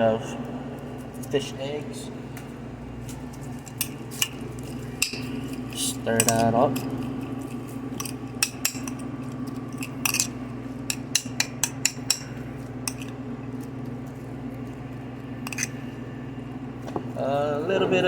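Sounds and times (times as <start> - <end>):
steady low hum: 0.0 - 18.0
utensil clinking against a bowl: 3.4 - 14.8, 15.4 - 15.9.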